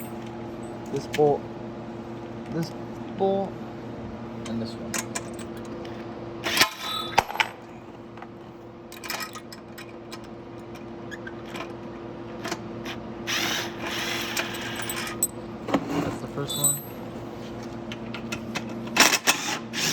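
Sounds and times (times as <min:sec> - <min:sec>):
steady low hum: 0:00.0 - 0:11.0
hand tools clinking on metal: 0:16.4 - 0:17.0.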